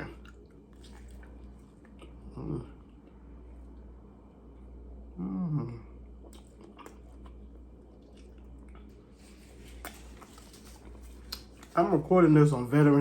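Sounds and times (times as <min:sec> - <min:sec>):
person chewing food: 0:00.0 - 0:03.9, 0:06.0 - 0:11.8
low falling hum voice: 0:00.0 - 0:13.0.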